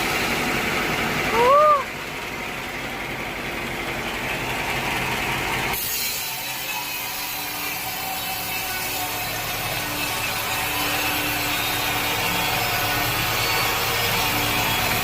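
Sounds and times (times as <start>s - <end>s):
saw cutting through wood: 5.4s - 15.0s.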